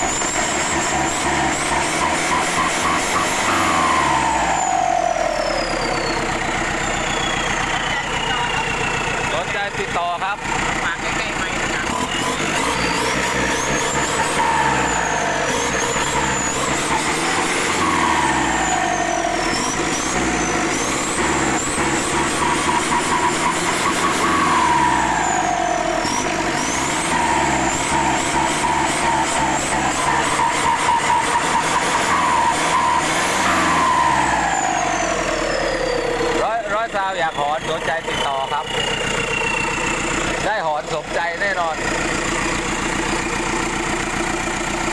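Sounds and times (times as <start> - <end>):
turbo whistle: 0.0 - 9.5, 11.9 - 40.2
diesel engine revving: 0.0 - 44.9.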